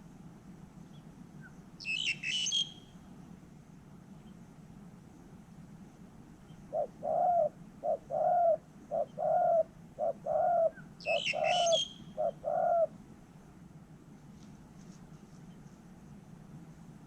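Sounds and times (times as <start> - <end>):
small bird chirping: 0.8 - 3.0, 6.4 - 12.9
dove cooing: 6.7 - 13.0.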